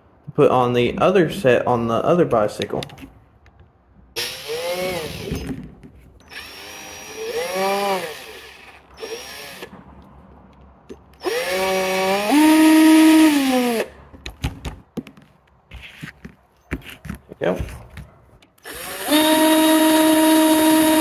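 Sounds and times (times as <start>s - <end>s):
power drill motor: 4.2s - 5.5s, 6.2s - 9.7s, 11.2s - 13.9s, 18.6s - 21.0s.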